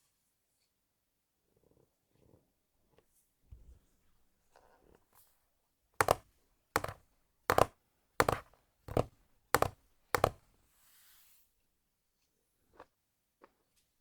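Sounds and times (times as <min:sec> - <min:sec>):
hard double knocks: 0:06.8 - 0:10.4.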